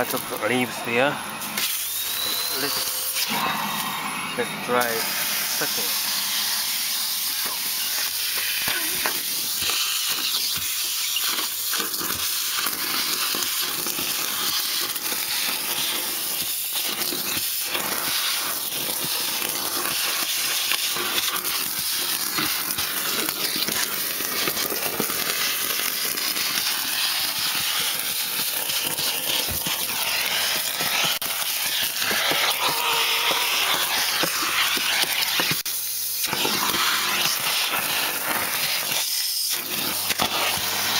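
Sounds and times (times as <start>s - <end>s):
debris crackling up a hose: 0.0s - 3.8s, 4.7s - 40.9s
vacuum suction hiss: 0.0s - 40.9s.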